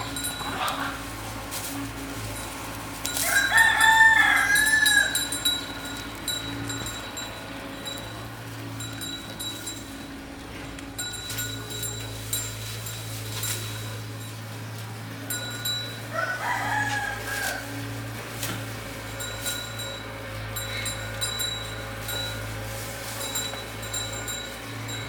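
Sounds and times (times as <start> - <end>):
rooster crowing: 3.1 - 5.8, 16.0 - 18.0.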